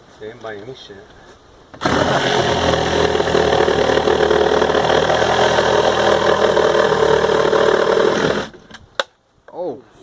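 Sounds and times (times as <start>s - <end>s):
small electric motor running: 1.8s - 8.6s.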